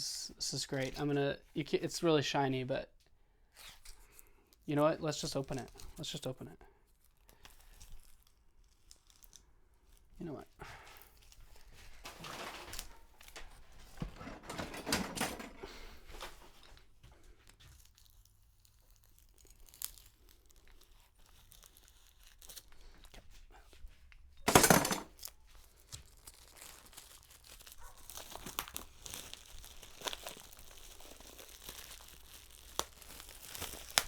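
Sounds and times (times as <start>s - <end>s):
packaging crinkling and rustling: 3.7s - 23.4s, 24.4s - 34.0s
packaging ripping: 7.0s - 10.1s, 17.8s - 23.2s, 24.5s - 34.0s.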